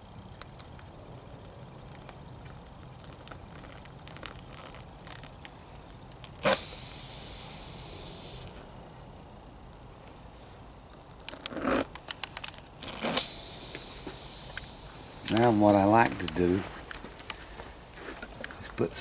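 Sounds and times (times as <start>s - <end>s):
aerosol spray hissing: 5.8s - 8.8s, 12.8s - 19.0s
faint handling clicks and taps: 13.7s - 19.0s.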